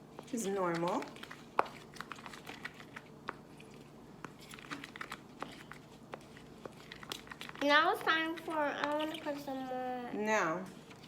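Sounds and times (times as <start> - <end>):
slime clicking and crackling: 6.6 - 9.6.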